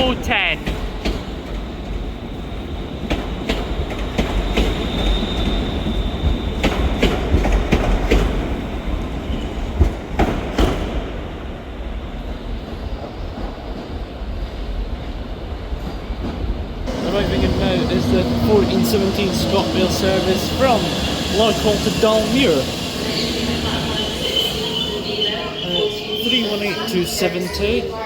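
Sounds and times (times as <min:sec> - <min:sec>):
low train rumble: 0:00.0 - 0:28.0
train wheels clicking over rail joints: 0:03.0 - 0:11.1
wheel squeal: 0:04.3 - 0:07.0, 0:19.2 - 0:27.2.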